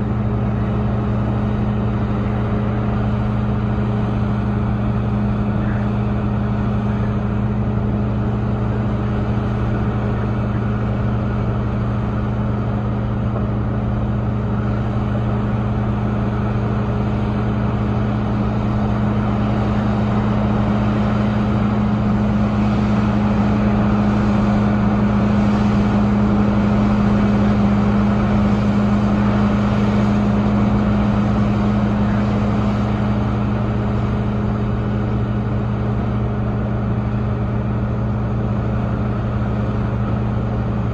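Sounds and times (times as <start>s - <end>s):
excavator diesel engine drone: 0.0s - 40.9s.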